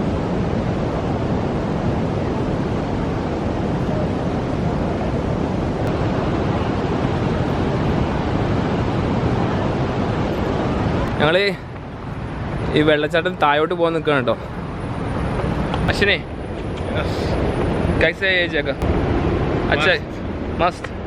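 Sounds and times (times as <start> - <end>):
waterfall rushing: 0.0 - 12.8.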